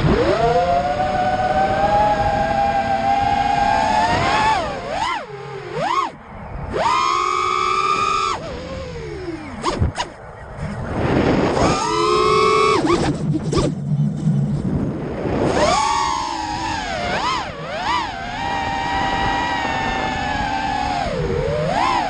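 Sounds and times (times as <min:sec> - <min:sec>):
drone motors whining: 0:00.0 - 0:22.0.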